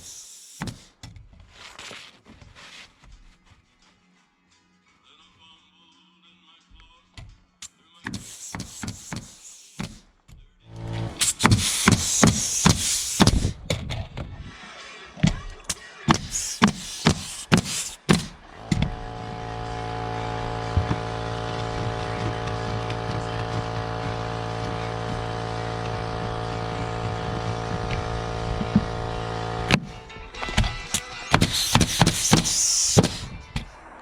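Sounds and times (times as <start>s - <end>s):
air hiss: 0.0s - 0.9s, 8.1s - 10.0s, 10.9s - 13.6s, 16.1s - 18.4s, 31.0s - 33.5s
pneumatic nailer shots: 0.0s - 0.9s, 8.1s - 10.0s, 10.7s - 13.6s, 16.1s - 33.7s
motor running: 10.7s - 13.6s, 16.1s - 33.5s.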